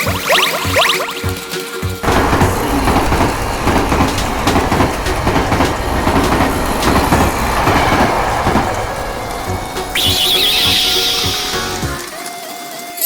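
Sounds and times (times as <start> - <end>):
wheels rattling over track: 2.0 - 12.2.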